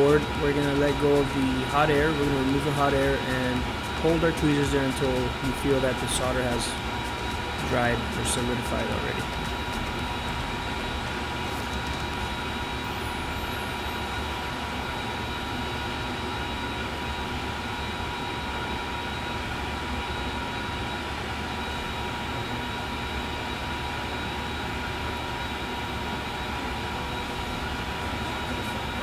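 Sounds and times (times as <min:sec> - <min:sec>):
thin whining tones: 0:00.0 - 0:15.4
fume extractor fan whirring: 0:00.0 - 0:29.0.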